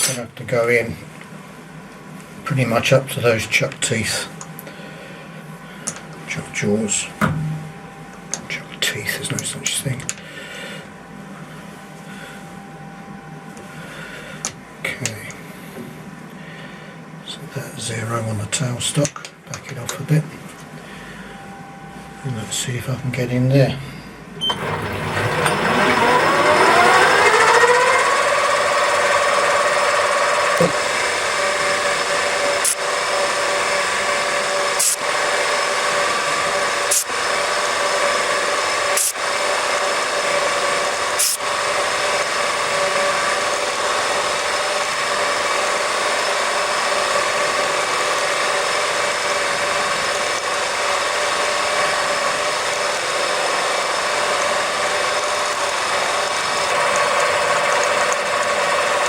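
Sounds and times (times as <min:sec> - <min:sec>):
metal lathe motor whine: 0:24.4 - 0:59.0.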